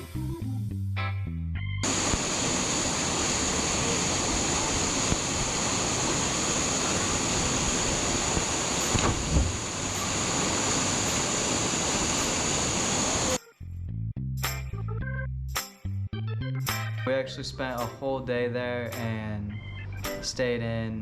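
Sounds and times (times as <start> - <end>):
waterfall roaring: 1.8 - 13.4
brief thump: 8.9 - 9.6.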